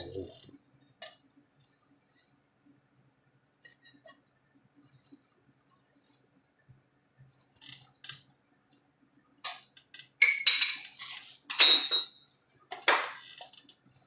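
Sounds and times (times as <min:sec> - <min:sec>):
sheet metal and tools clanking: 0:10.2 - 0:12.2.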